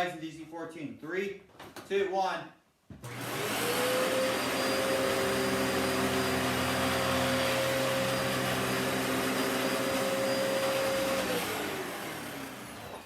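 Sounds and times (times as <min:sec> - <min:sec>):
vacuum cleaner motor whine: 0:03.0 - 0:13.0.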